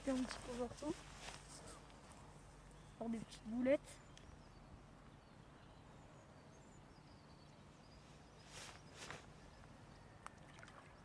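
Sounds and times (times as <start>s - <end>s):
short rustles: 0.1s - 2.3s, 8.4s - 9.3s
faint bird chirps: 1.5s - 11.0s.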